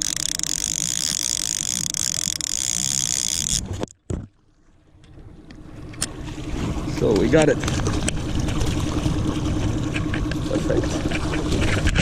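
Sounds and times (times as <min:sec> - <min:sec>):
fishing reel clicking: 0:00.0 - 0:03.9
boat engine drone: 0:00.0 - 0:12.0.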